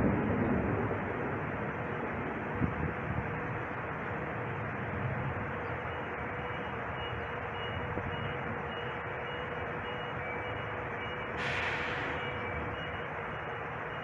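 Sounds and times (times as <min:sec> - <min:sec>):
faint high electronic beep: 0:05.9 - 0:14.0.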